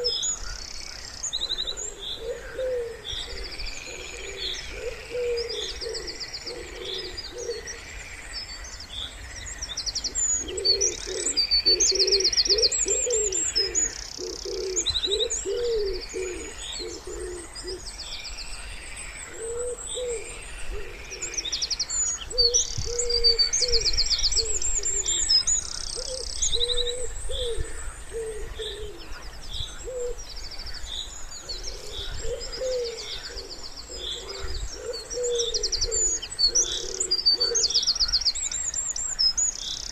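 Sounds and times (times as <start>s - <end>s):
songbirds chirping: 0.0s - 39.9s
pigeon cooing: 1.7s - 7.7s, 10.4s - 17.8s, 19.3s - 21.4s, 22.4s - 25.2s, 26.0s - 29.1s, 29.8s - 30.2s, 31.6s - 37.7s.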